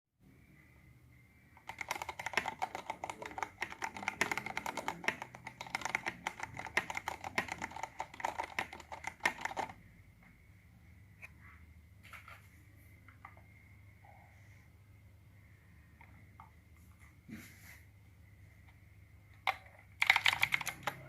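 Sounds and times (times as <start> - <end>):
faint high whine: 0.2 - 1.7, 9.7 - 19.4
mechanical keyboard typing: 1.6 - 9.8, 19.4 - 21.0.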